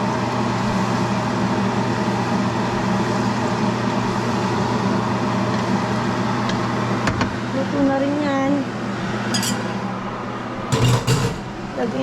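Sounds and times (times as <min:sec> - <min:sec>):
exhaust fan motor humming: 0:06.0 - 0:12.0.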